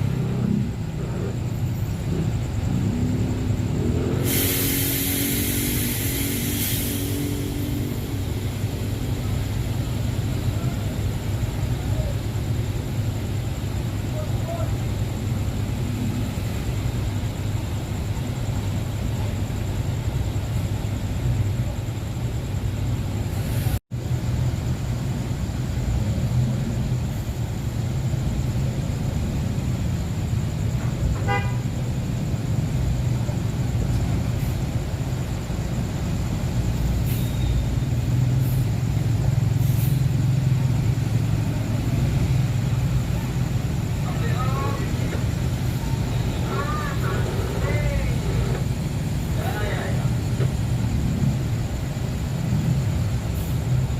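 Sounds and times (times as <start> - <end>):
heavy engines rumbling: 0.0 - 53.9
horn toot: 31.2 - 31.8.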